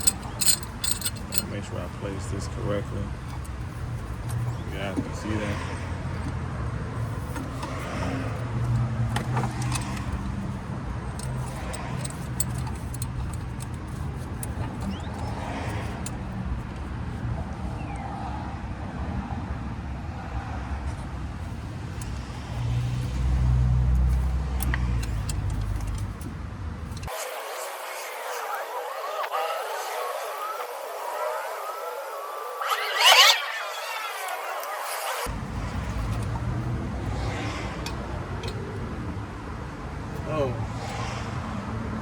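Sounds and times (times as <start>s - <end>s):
metal clicks of hand tools: 0.0s - 1.6s, 8.6s - 16.4s, 22.0s - 27.1s, 37.8s - 38.8s
clamp screwing against metal: 0.0s - 1.8s, 8.6s - 16.4s, 22.0s - 27.1s, 32.7s - 33.4s
vehicle engine humming: 0.0s - 17.8s, 20.6s - 42.0s.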